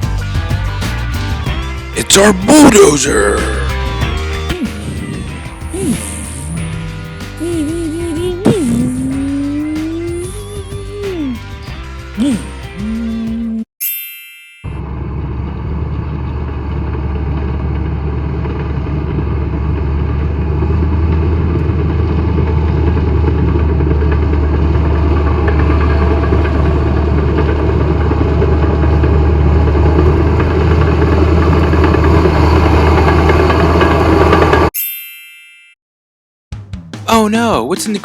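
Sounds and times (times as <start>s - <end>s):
bulldozer diesel engine humming: 0.0s - 13.6s, 14.7s - 34.7s.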